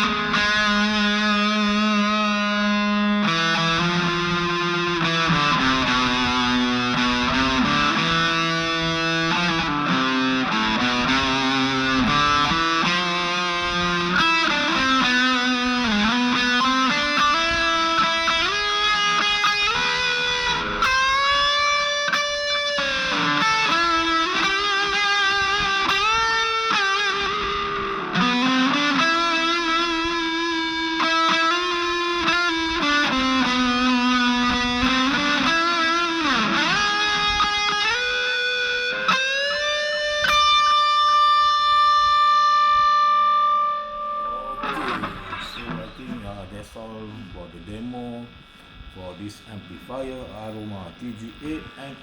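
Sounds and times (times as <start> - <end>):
distorted electric guitar lead: 0.0 - 52.0.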